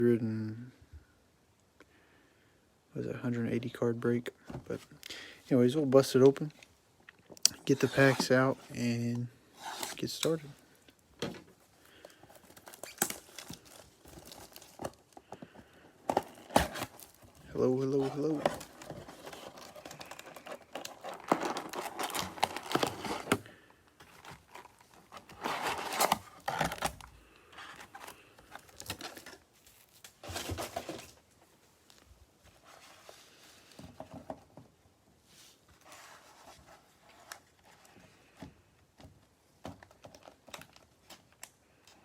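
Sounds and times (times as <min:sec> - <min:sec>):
plastic wrapping crinkling and tearing: 0:12.0 - 0:15.4, 0:16.0 - 0:31.2.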